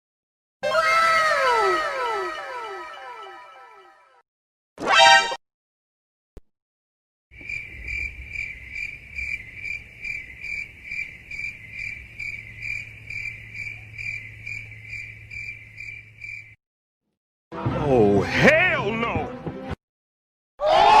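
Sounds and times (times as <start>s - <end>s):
crickets chirping: 7.4s - 16.6s.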